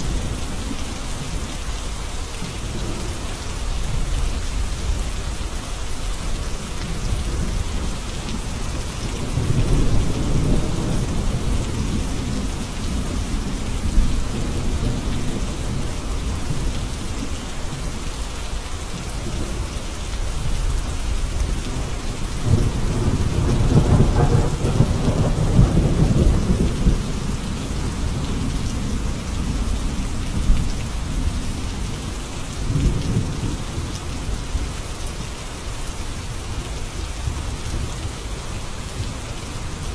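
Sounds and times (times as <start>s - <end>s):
heavy rain: 0.0s - 39.9s
low rolling thunder: 6.6s - 17.9s, 20.4s - 34.8s.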